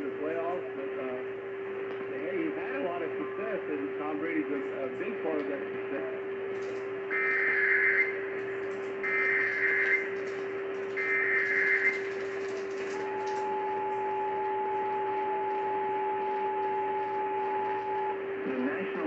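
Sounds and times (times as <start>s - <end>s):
long steady attention tone: 0.0s - 19.0s
radio hiss: 2.1s - 6.2s, 11.0s - 19.0s
low whistle: 7.1s - 8.3s, 9.0s - 10.2s, 11.0s - 12.2s
data bursts over radio: 9.0s - 19.0s.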